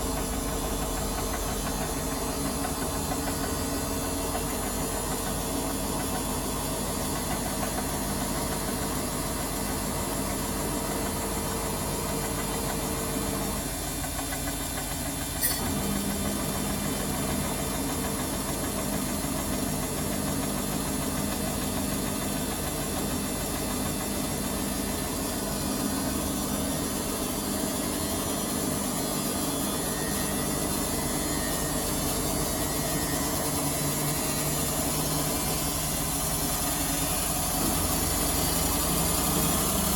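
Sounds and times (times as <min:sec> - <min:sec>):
washing machine motor humming: 0:00.0 - 0:39.9.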